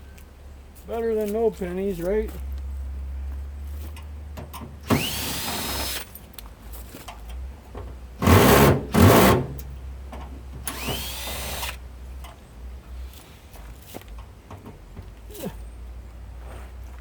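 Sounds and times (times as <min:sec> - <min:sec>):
power drill whining: 0:04.9 - 0:06.1, 0:10.7 - 0:11.8.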